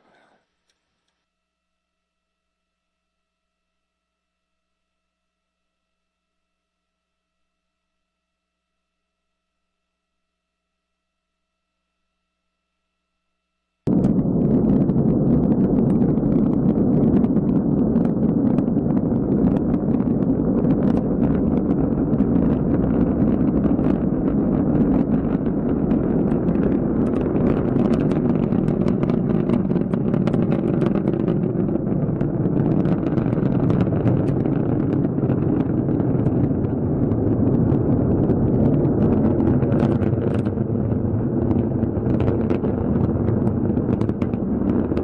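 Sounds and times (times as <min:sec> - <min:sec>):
rocket engine roaring: 0:13.9 - 0:45.0.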